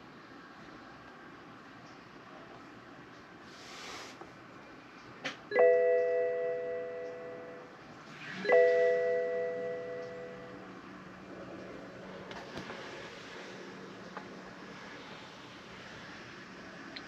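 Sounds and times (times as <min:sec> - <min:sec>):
short hiss: 0:03.5 - 0:04.2
electronic chime: 0:05.5 - 0:07.7, 0:08.4 - 0:10.6.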